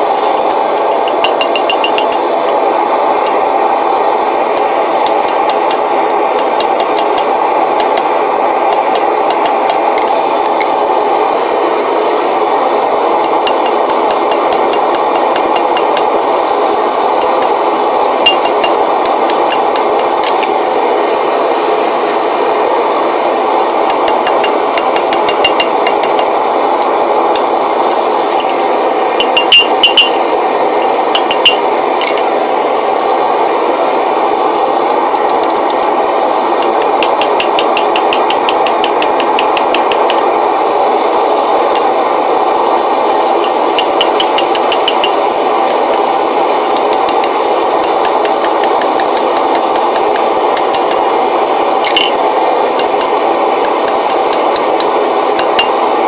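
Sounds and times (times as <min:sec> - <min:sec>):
steel tools tapping metal: 0:00.9 - 0:02.6, 0:04.6 - 0:08.1, 0:08.7 - 0:10.7, 0:13.2 - 0:16.5, 0:18.2 - 0:20.6, 0:23.7 - 0:28.6, 0:29.2 - 0:30.2, 0:30.8 - 0:32.3, 0:35.2 - 0:40.2, 0:43.4 - 0:46.1, 0:46.8 - 0:51.0, 0:51.8 - 0:52.2, 0:52.8 - 0:55.9.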